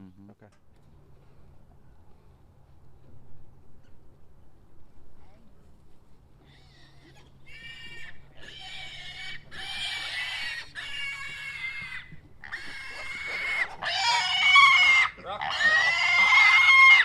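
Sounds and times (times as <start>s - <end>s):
piglets squealing: 6.5s - 17.0s.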